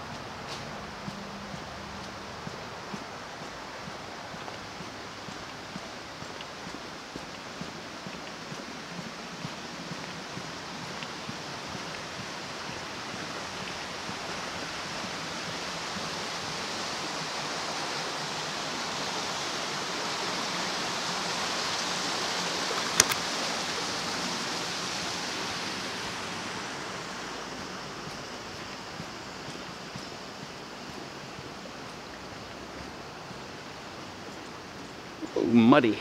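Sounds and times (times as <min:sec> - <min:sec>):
creek water rushing: 0:00.0 - 0:36.0
sharp click: 0:23.0 - 0:23.2.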